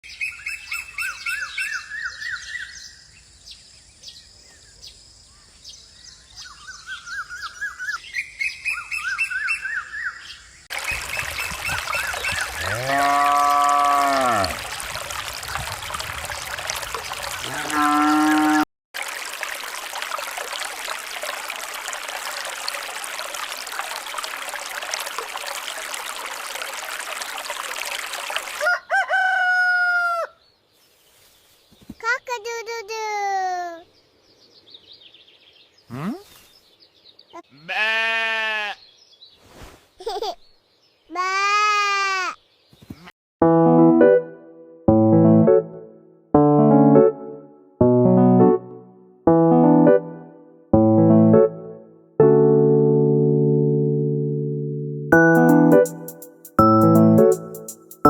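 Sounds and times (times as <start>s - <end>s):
small songbirds chirping: 0.0s - 14.3s, 33.8s - 37.6s, 38.8s - 41.2s, 42.3s - 43.1s
running water hiss: 10.7s - 18.4s, 19.0s - 28.6s
rooster crowing: 28.6s - 30.4s.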